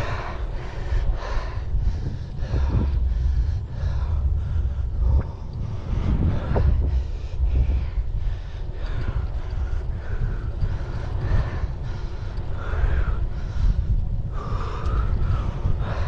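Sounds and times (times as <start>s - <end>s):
wind rumbling on microphone: 0.0s - 16.0s.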